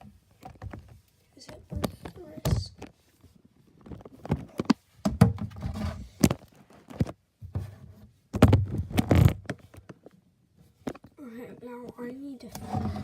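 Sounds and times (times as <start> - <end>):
objects knocking and rubbing: 0.0 - 3.0, 3.6 - 10.1, 12.4 - 13.0.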